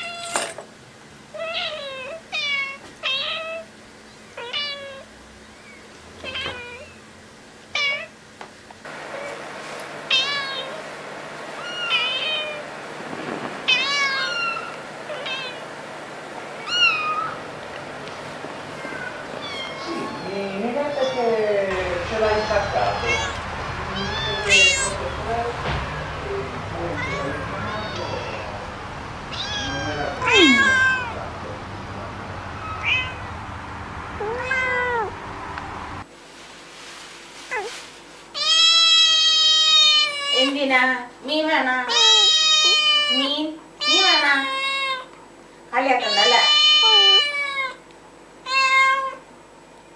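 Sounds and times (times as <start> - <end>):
cat meowing: 4.4 - 7.0, 7.8 - 8.1, 10.1 - 10.8, 11.6 - 12.6, 13.7 - 15.7, 16.6 - 17.4, 18.7 - 25.3, 26.0 - 31.5, 32.5 - 33.4, 34.2 - 35.2, 38.4 - 40.5, 41.9 - 45.1, 46.0 - 47.8, 48.4 - 49.2.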